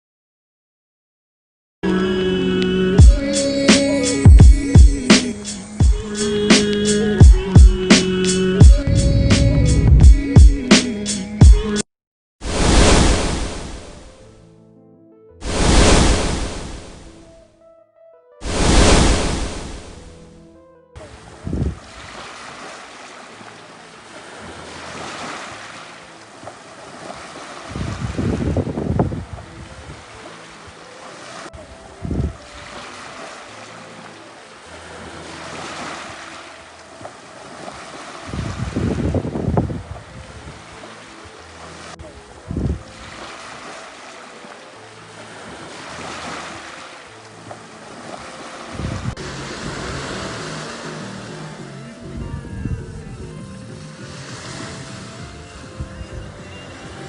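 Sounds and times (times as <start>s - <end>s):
wind thumping on microphone: 8.6s - 10.4s, 18.4s - 20.0s, 21.4s - 21.9s, 27.7s - 30.0s, 32.0s - 32.4s, 38.3s - 40.6s, 42.5s - 42.8s, 48.7s - 50.7s, 52.0s - 53.4s
sea waves washing onto shore: 12.4s - 14.0s, 15.4s - 17.1s, 18.4s - 20.1s, 21.1s - 52.0s, 54.0s - 55.6s.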